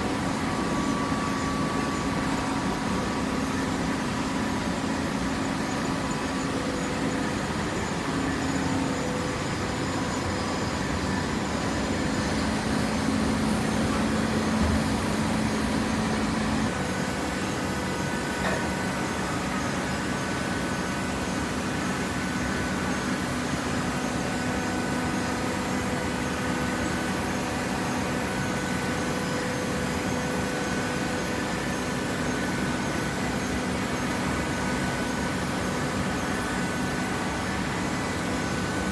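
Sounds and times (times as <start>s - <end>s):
hydraulic baler motor humming: 11.6s - 16.8s.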